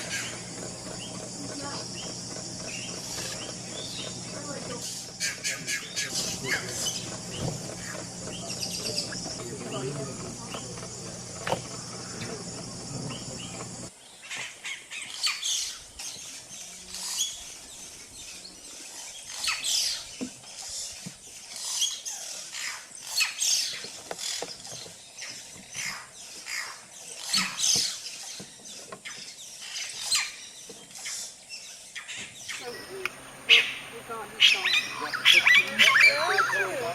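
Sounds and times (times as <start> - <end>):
steady hum: 0.0 - 13.9, 32.6 - 36.9
birds calling: 0.0 - 31.4, 32.0 - 36.9.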